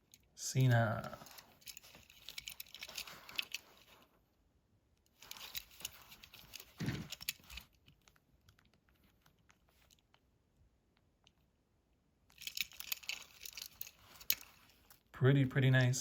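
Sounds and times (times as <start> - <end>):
toy cars clicking: 12.3 - 14.6.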